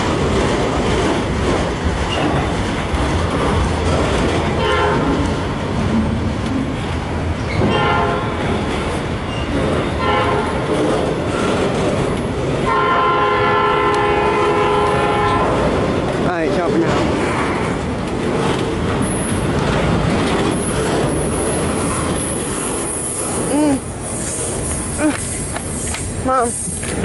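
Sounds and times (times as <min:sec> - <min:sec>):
train wheels rumbling on rails: 0:00.0 - 0:27.0
locomotive air horn blasts: 0:07.7 - 0:08.3, 0:12.7 - 0:15.6.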